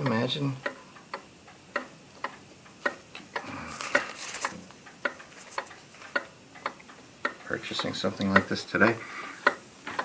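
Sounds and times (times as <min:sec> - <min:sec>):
pendulum clock ticking: 0:00.0 - 0:04.1, 0:04.8 - 0:10.0
handling rustle: 0:03.7 - 0:04.6.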